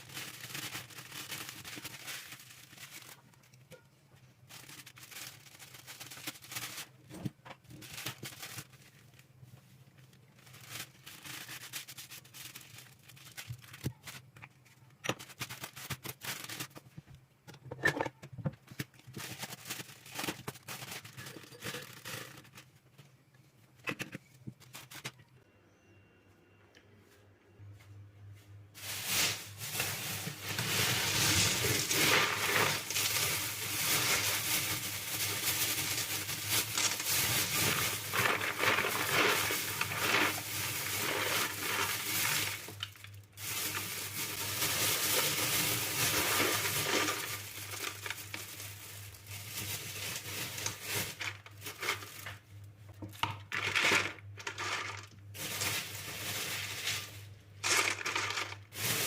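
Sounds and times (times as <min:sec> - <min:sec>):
dry grains pouring into container: 0:29.2 - 0:51.5, 0:53.6 - 0:59.0.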